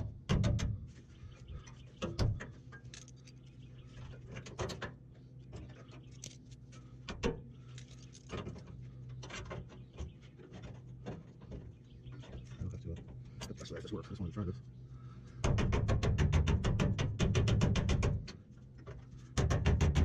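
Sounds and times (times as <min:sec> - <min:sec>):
low hum: 0:00.0 - 0:20.0
sharp knocks: 0:15.4 - 0:18.3.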